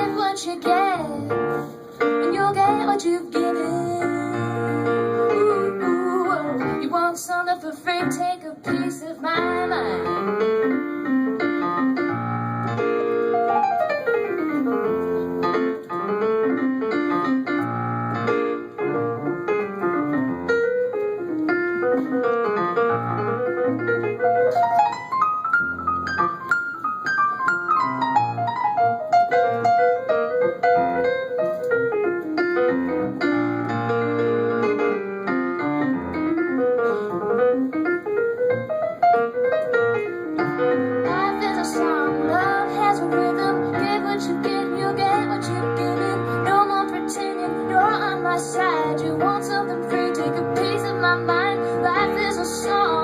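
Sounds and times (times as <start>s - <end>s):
piano solo: 0.0s - 53.0s.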